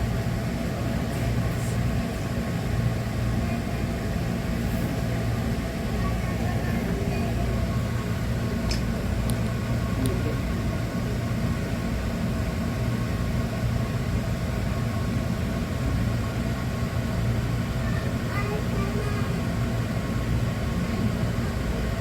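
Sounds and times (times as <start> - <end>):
train car hum and rushing: 0.0 - 22.0.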